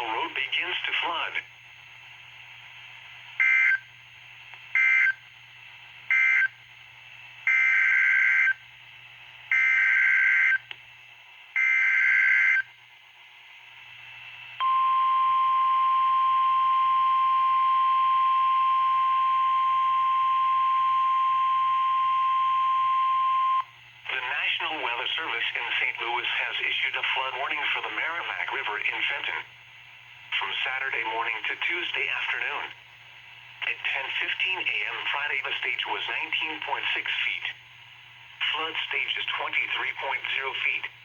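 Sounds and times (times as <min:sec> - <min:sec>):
steady alarm tone: 0:11.6 - 0:12.6, 0:14.6 - 0:23.7.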